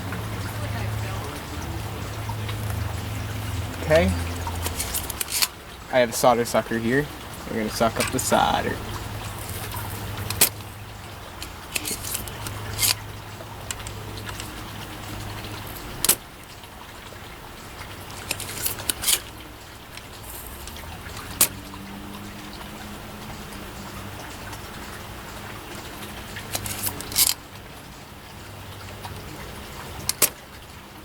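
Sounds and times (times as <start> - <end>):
desoldering pump snapping: 2.4 - 6.6, 7.3 - 16.6, 17.8 - 21.7, 26.4 - 27.4, 30.0 - 30.4.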